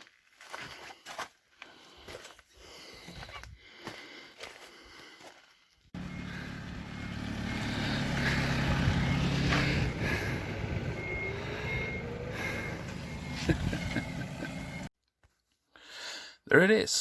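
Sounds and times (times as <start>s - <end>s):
vehicle engine running: 6.0s - 14.9s.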